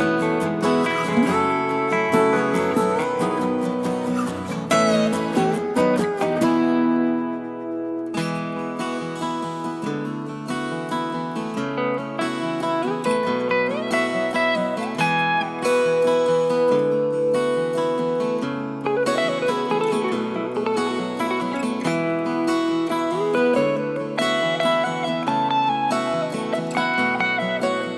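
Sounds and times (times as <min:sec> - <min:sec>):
acoustic guitar music: 0:00.0 - 0:27.9.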